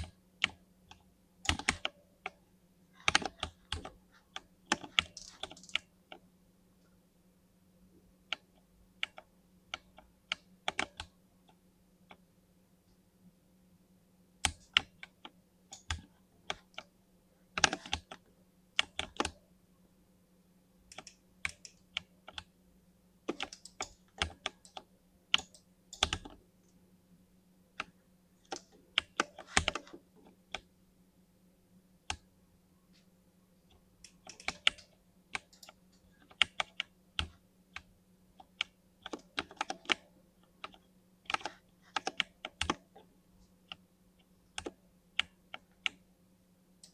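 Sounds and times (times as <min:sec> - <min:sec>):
typing on mechanical keyboard: 0:01.5 - 0:02.4, 0:03.0 - 0:04.0, 0:04.7 - 0:05.9, 0:17.6 - 0:18.2, 0:23.3 - 0:26.4, 0:28.5 - 0:30.7, 0:34.0 - 0:43.0.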